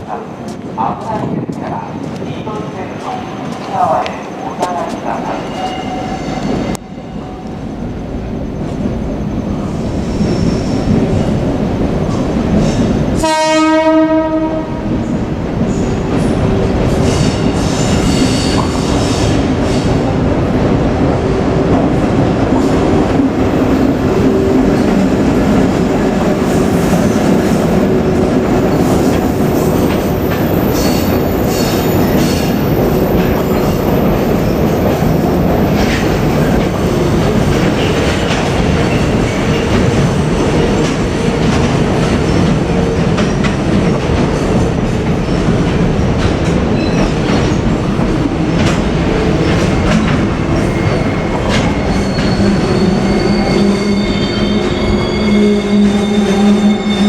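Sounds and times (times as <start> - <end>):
freight train rumbling over rails: 0.0 - 57.0
train horn blast: 13.2 - 14.9.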